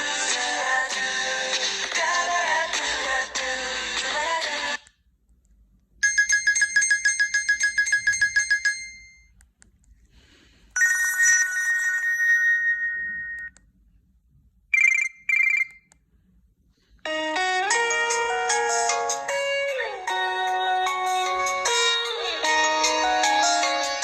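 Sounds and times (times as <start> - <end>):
rapid pulsing beep: 10.8 - 13.6, 14.8 - 15.8
short warbling chirps: 14.8 - 15.8.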